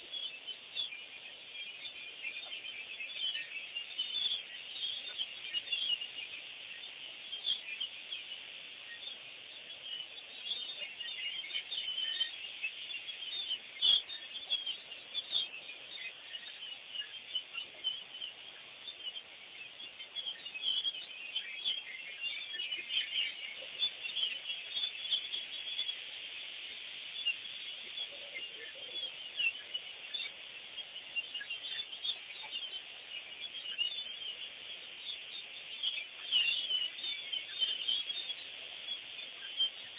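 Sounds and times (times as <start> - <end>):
birds chirping and calling: 0.0 - 39.9.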